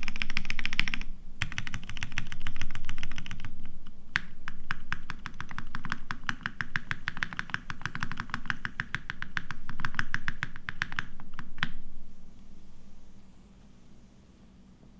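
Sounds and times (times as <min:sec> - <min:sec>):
fast typing on mechanical keyboard: 0:00.0 - 0:11.7.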